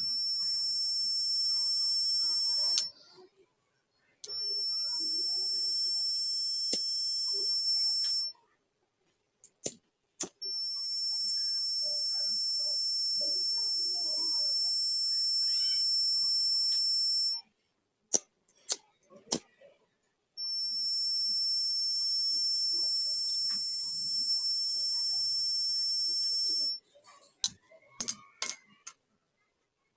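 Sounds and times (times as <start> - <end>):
high-pitched alarm buzzer tone: 0.0 - 2.9, 4.3 - 8.3, 10.4 - 17.5, 20.4 - 26.8.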